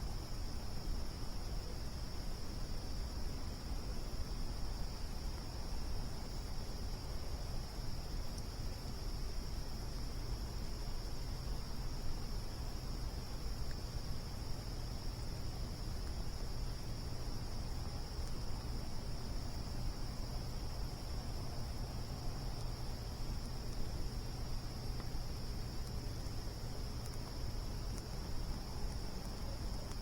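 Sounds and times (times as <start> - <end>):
crickets chirping: 0.0 - 30.0
faint clicks: 25.0 - 25.2, 25.8 - 30.0.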